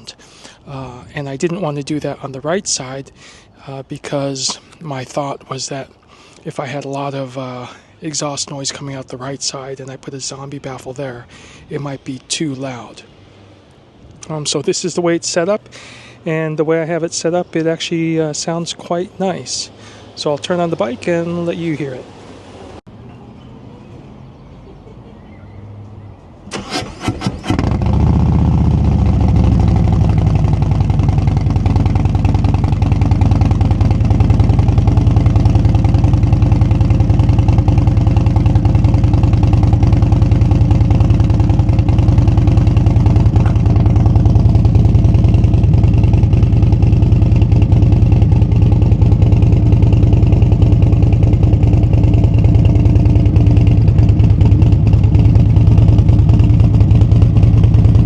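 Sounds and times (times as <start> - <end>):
motorcycle engine starting: 26.5 - 58.0
motorcycle engine idling: 27.3 - 58.0.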